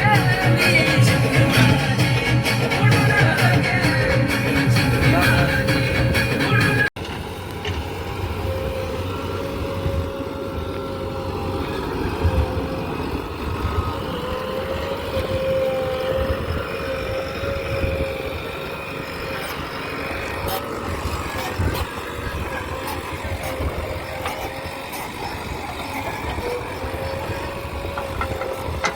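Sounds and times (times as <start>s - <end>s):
high whine: 0.0s - 6.9s
excavator diesel engine rumble: 0.0s - 28.9s.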